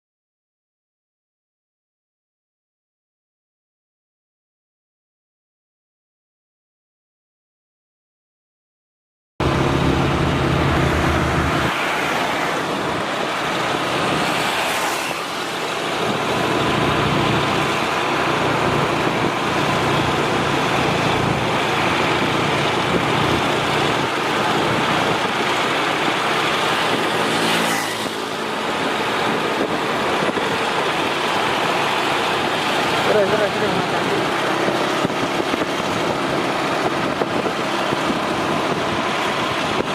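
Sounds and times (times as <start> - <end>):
rushing road noise: 9.4 - 39.9
truck engine running: 9.4 - 39.9.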